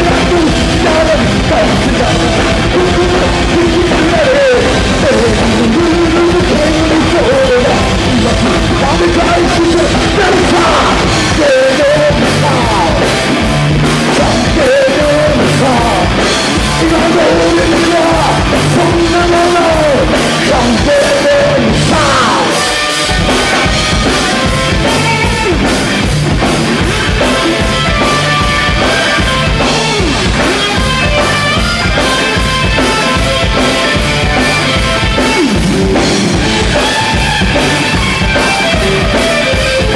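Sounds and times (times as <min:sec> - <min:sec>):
person singing: 0:00.0 - 0:13.4, 0:14.0 - 0:25.6
loud live rock band: 0:00.0 - 0:39.9.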